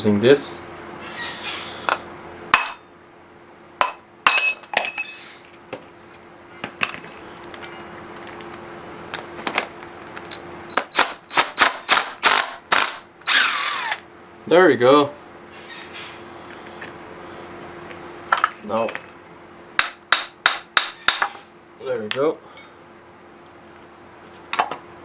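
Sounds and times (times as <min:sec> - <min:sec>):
hammer striking metal: 0:19.8 - 0:21.4.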